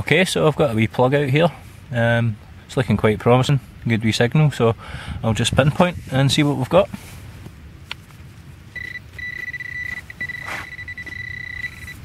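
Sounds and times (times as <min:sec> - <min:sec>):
soil scraping: 0:08.0 - 0:12.0
high-pitched detector tone: 0:08.8 - 0:12.0.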